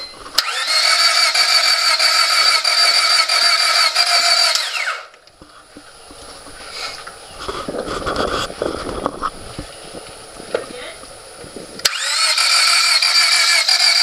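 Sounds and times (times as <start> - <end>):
starter motor cranking engine: 0.2 - 5.2, 11.8 - 14.0.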